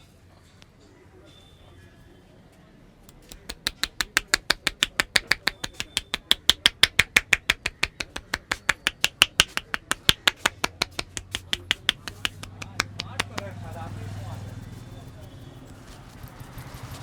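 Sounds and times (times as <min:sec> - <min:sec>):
hands patting head: 0:03.1 - 0:16.1.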